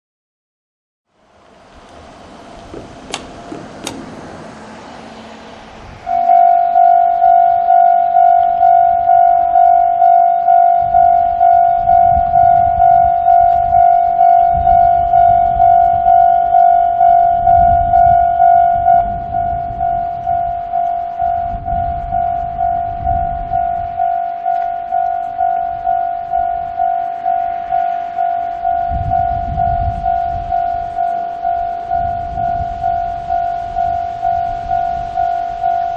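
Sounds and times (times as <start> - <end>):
wind buffeting microphone: 1.2 - 35.9
level crossing alarm dinging: 1.3 - 35.9
clicks: 2.7 - 4.1.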